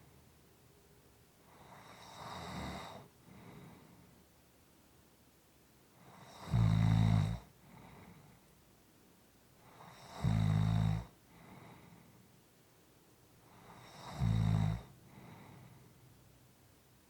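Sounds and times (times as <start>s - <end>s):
soft breathing: 2.9s - 4.4s, 7.6s - 8.6s, 11.2s - 12.4s, 14.8s - 16.2s
person snoring: 9.7s - 11.1s, 13.5s - 15.5s.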